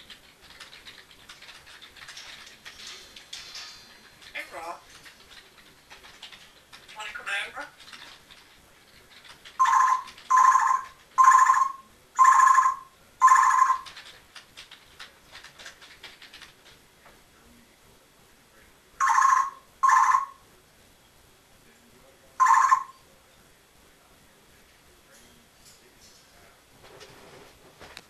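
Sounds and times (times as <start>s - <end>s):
parrot mimicking ringtone beeps: 9.6s - 13.9s, 19.0s - 20.4s, 22.4s - 23.0s.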